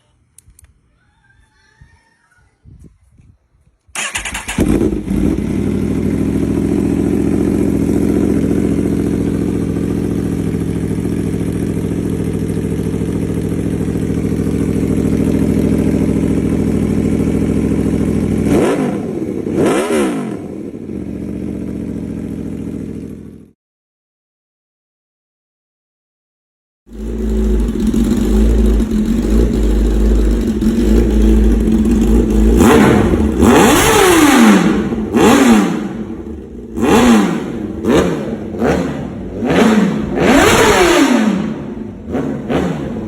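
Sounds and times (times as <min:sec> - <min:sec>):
motorcycle engine starting: 0:03.9 - 0:23.5, 0:26.9 - 0:43.0
motorcycle engine idling: 0:04.0 - 0:18.5, 0:20.6 - 0:23.5, 0:26.9 - 0:43.0
motorcycle engine revving: 0:04.0 - 0:23.6, 0:26.9 - 0:43.0.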